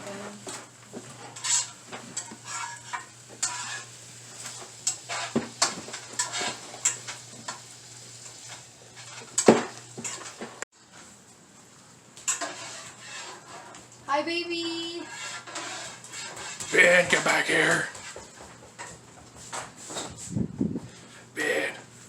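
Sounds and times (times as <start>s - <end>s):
cutlery and dishes clinking: 1.2s - 7.6s, 8.5s - 10.5s, 12.2s - 13.4s.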